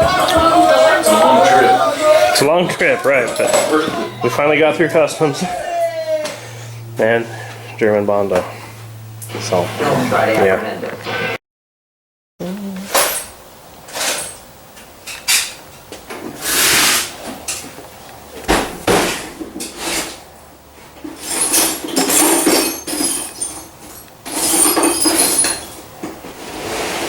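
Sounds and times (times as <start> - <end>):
metal tools clanking: 3.0 - 4.6, 12.9 - 14.5, 21.1 - 25.9
metal scrape: 16.4 - 17.1.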